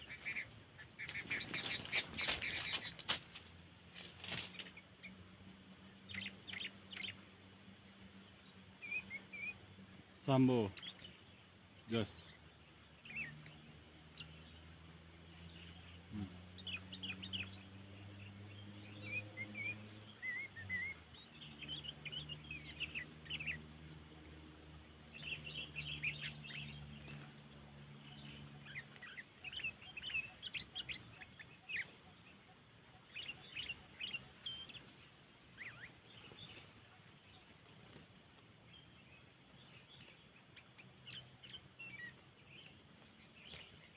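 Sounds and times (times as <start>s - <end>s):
birds chirping: 0.0s - 43.9s
faint low hum: 0.0s - 43.9s.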